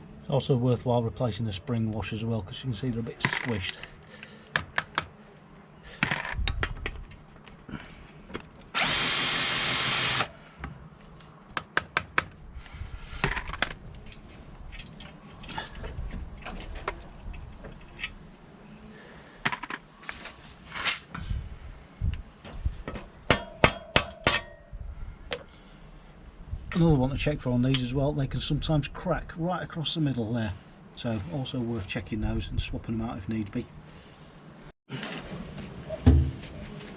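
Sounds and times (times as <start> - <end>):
power tool running: 8.7 - 10.3.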